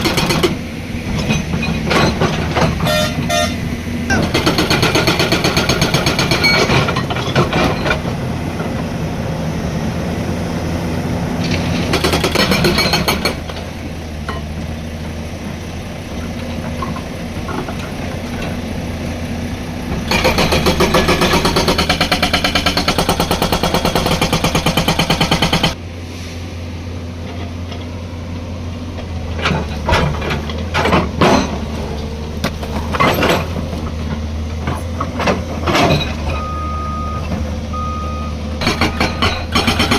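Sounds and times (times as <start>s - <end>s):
hydraulic rock breaker hammering stone: 0.0s - 3.2s, 4.1s - 8.1s, 11.4s - 13.6s, 19.9s - 25.8s, 38.6s - 39.9s
diesel engine running: 0.0s - 39.9s.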